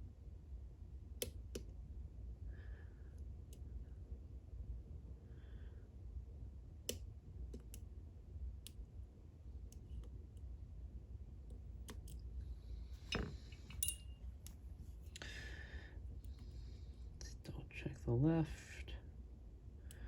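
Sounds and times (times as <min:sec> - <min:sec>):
lock pick clicking: 0:13.0 - 0:14.0.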